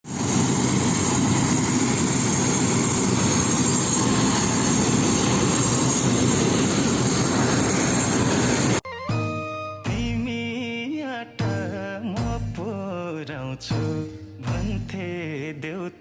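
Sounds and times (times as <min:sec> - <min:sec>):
aircraft engines running: 0:00.1 - 0:08.8.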